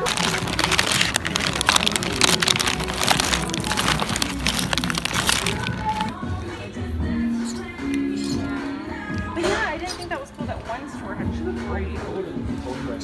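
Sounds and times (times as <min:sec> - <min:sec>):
plastic bag crinkling: 0:00.0 - 0:06.1
faint store music: 0:00.0 - 0:13.0.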